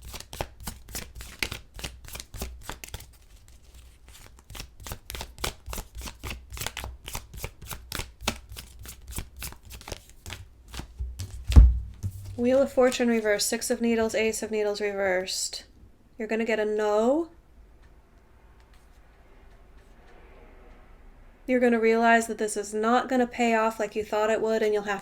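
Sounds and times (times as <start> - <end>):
cards being shuffled: 0.0 - 13.3.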